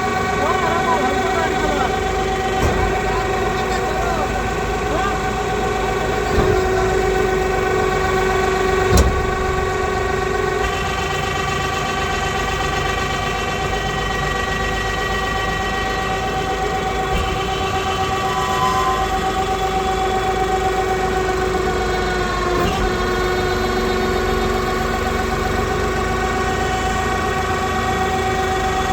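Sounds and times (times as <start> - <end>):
baling press machine droning hum: 0.0 - 18.4
sharp knock: 8.9 - 10.9.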